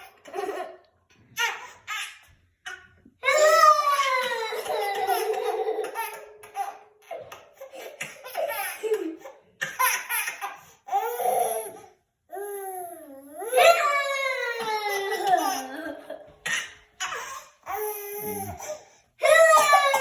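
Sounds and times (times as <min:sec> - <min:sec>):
baby laughing: 0:00.0 - 0:02.9, 0:04.5 - 0:11.9, 0:14.6 - 0:18.8.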